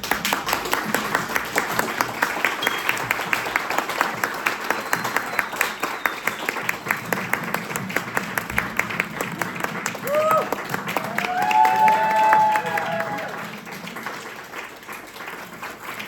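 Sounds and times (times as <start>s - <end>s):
audience applauding: 0.0s - 16.0s.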